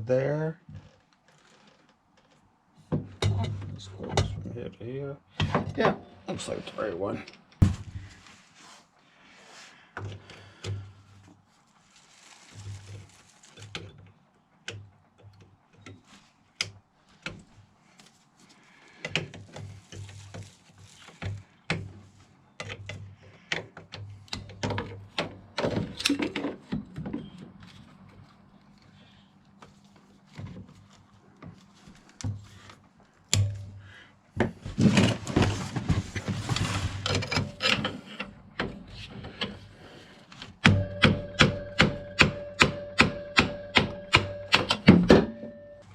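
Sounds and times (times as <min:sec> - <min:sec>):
metal parts rattling and scraping: 0:34.7 - 0:38.3.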